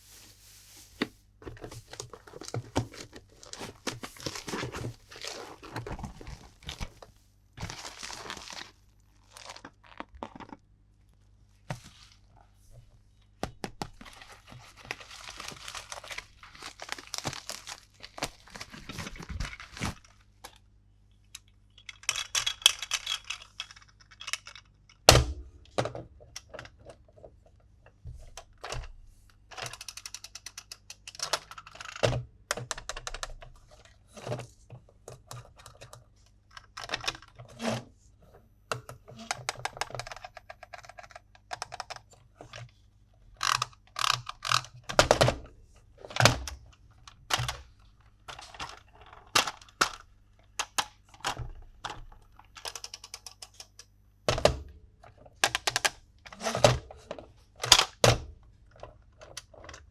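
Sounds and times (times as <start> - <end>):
packaging crinkling and tearing: 0.0 - 10.6, 13.9 - 20.2
plastic parts clicking: 1.0 - 10.6, 13.4 - 27.2, 29.5 - 37.8, 38.7 - 54.7.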